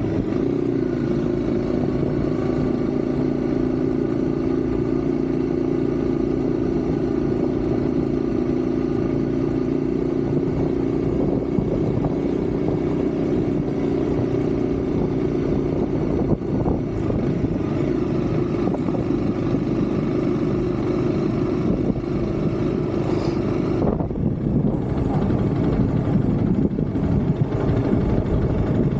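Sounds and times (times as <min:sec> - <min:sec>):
motorcycle engine running: 0:00.0 - 0:28.9
rushing wind noise: 0:10.2 - 0:20.0, 0:21.5 - 0:28.9.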